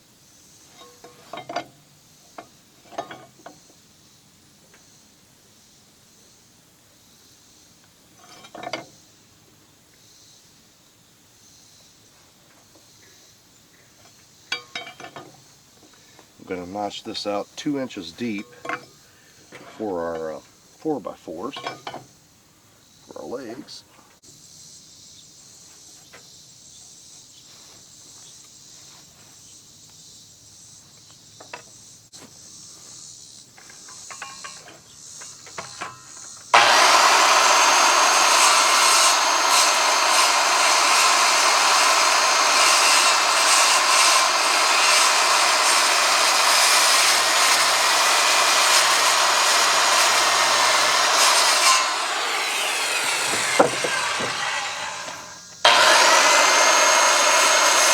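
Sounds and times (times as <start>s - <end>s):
power saw cutting wood: 16.4s - 18.9s, 35.6s - 57.9s.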